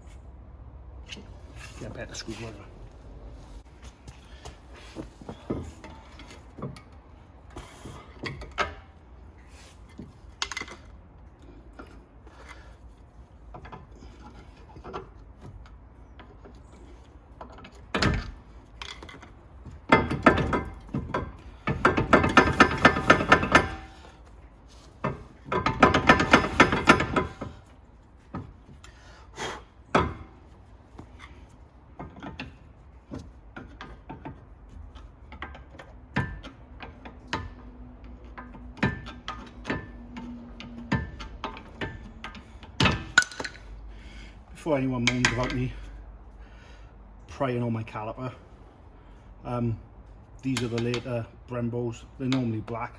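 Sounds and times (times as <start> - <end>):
rapid metallic clicking and rattling: 19.9 - 24.0, 25.0 - 27.7.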